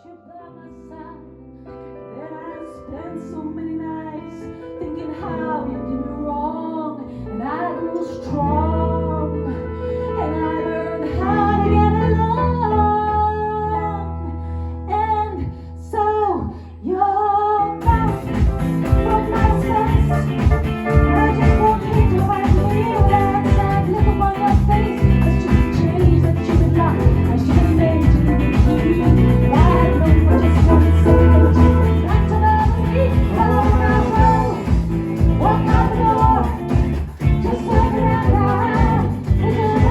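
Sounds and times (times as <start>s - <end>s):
person singing: 14.9s - 39.9s
live band playing: 17.8s - 39.9s.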